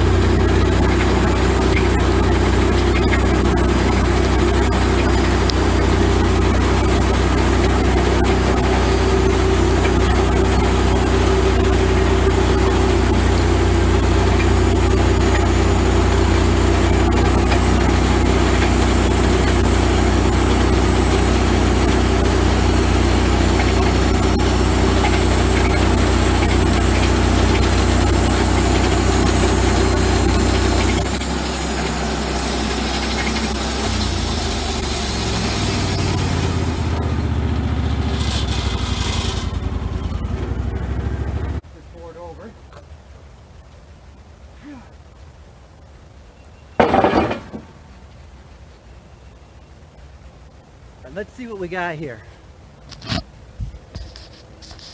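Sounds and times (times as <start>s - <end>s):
sawmill engine hum: 0.0s - 45.9s, 46.8s - 48.8s, 50.0s - 52.7s
bandsaw hiss: 25.3s - 37.1s.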